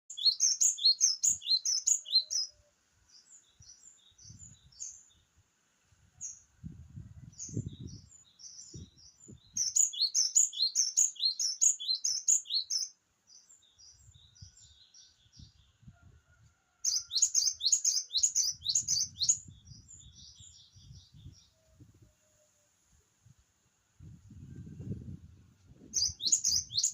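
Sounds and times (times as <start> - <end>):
bird chirping: 0.1 - 5.4, 7.2 - 15.9, 16.8 - 22.6, 25.8 - 26.9.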